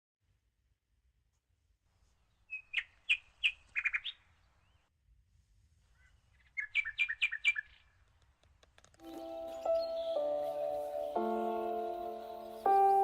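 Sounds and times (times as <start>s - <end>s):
songbird chirping: 2.0s - 4.9s, 5.8s - 13.0s.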